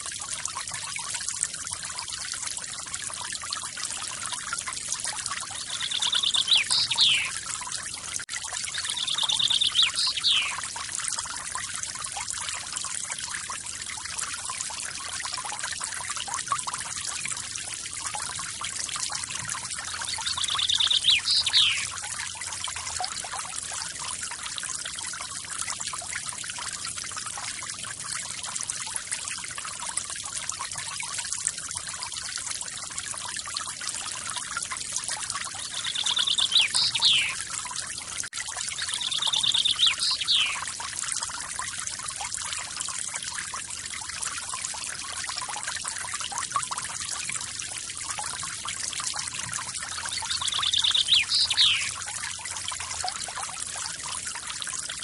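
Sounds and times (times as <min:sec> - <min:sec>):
bird trilling call: 0:05.7 - 0:07.3, 0:08.8 - 0:10.6, 0:20.2 - 0:21.9, 0:35.7 - 0:37.4, 0:38.8 - 0:40.6, 0:50.2 - 0:52.0.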